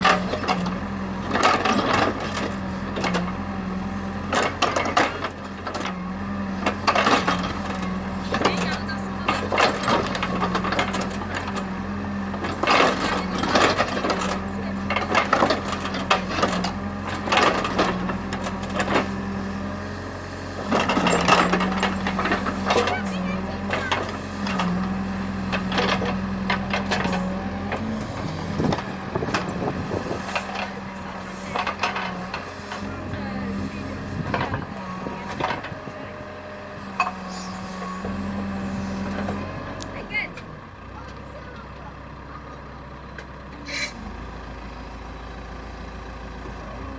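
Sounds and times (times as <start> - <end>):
diesel engine running: 0.0 - 46.9
metal clanks and scrapes: 20.5 - 32.9, 36.8 - 39.5, 43.6 - 44.0.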